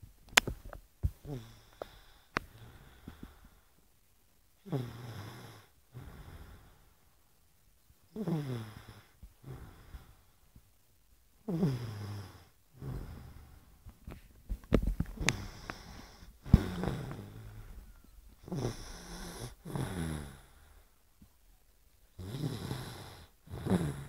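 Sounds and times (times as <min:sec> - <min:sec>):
snoring: 0:01.2 - 0:03.5, 0:04.6 - 0:06.8, 0:08.1 - 0:10.2, 0:11.4 - 0:13.6, 0:15.2 - 0:17.8, 0:18.4 - 0:20.8, 0:22.2 - 0:24.0
soft breath out: 0:15.0 - 0:19.7.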